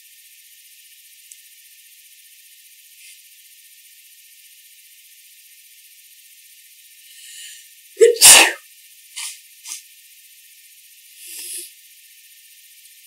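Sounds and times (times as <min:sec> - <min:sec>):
person sneezing: 0:08.0 - 0:08.6
short noises: 0:08.0 - 0:08.6.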